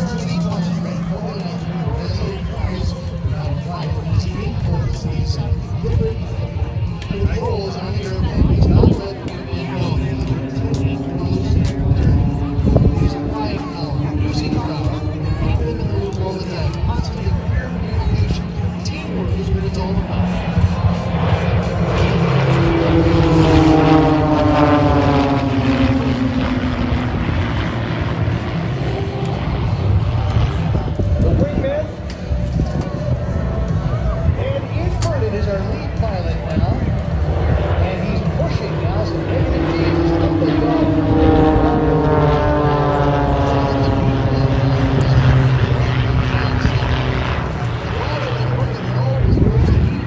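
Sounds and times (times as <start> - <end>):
propeller airplane flying past: 0.0 - 50.0.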